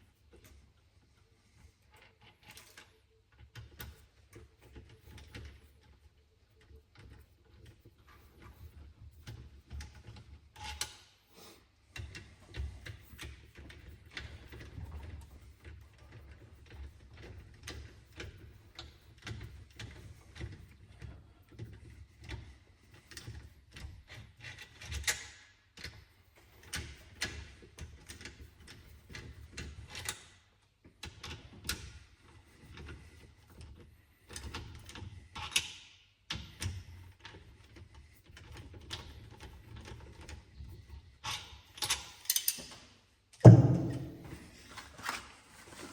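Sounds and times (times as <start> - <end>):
metal knocks and clatter: 43.4 - 44.5.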